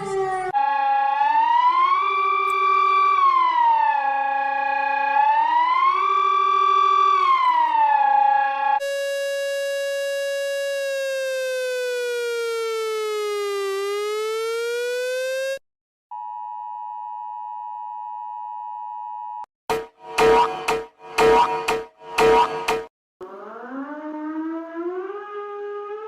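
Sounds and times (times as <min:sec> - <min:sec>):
siren-like tone gliding: 0:00.0 - 0:15.6, 0:19.7 - 0:26.0
harsh buzzing tone: 0:19.7 - 0:22.9
two-tone attention signal: 0:19.7 - 0:22.9.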